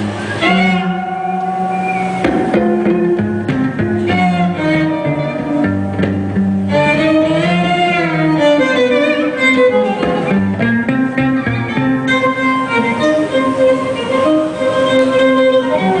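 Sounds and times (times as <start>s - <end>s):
bass line: 0.0s - 8.8s
plucked guitar: 0.0s - 16.0s
violin melody with vibrato: 0.0s - 16.0s.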